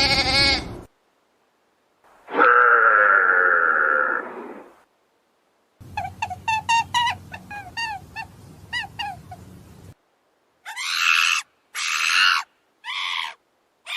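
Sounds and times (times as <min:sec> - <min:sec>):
short falling animal calls: 0:02.3 - 0:04.7, 0:10.6 - 0:13.9
harsh rasping animal calls: 0:05.8 - 0:09.7, 0:10.6 - 0:13.9.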